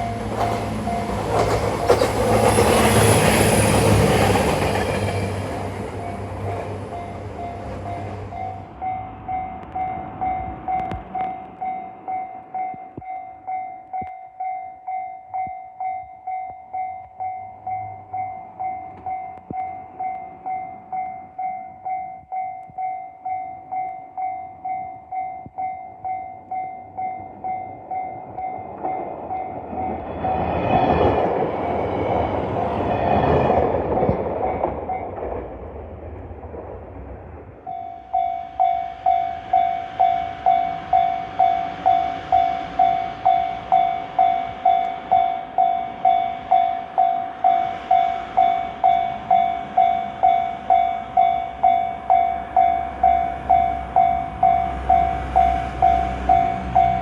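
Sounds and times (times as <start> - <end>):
train passing over crossing: 0.0 - 57.0
level crossing bell dinging: 37.7 - 57.0.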